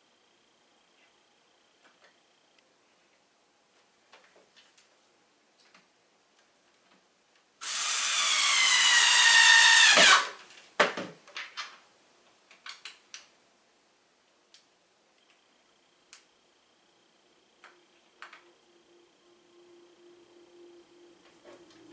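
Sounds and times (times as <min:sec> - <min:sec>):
electric drill driving screw: 0:07.6 - 0:10.4.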